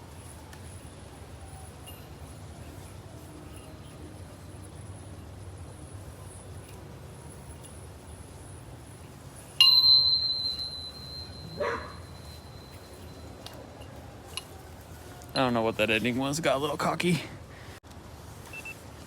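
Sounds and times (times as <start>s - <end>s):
metallic strike with ringing tone: 9.6s - 13.4s.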